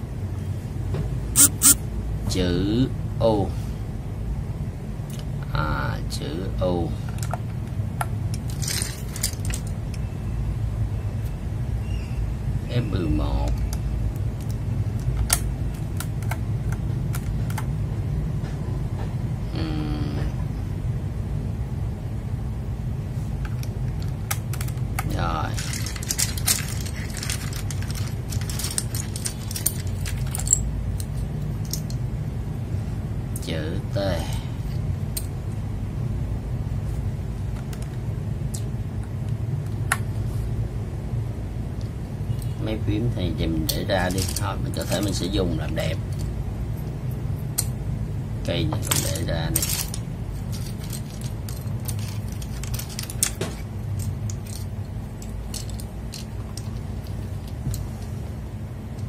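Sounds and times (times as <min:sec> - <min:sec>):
steady low hum: 0:00.0 - 0:59.0
keycaps clicking and clattering: 0:08.4 - 0:10.0, 0:13.5 - 0:17.8, 0:23.5 - 0:32.0, 0:44.0 - 0:45.3, 0:48.7 - 0:58.2.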